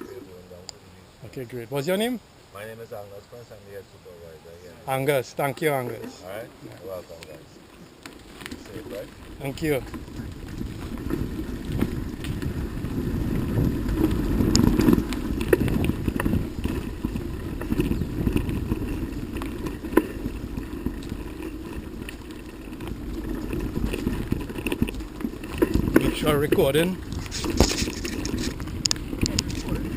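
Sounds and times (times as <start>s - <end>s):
bicycle tyres rumbling on dirt: 2.8s - 29.9s
bike clicks and rattles: 6.9s - 29.9s
wind buffeting microphone: 8.3s - 29.9s.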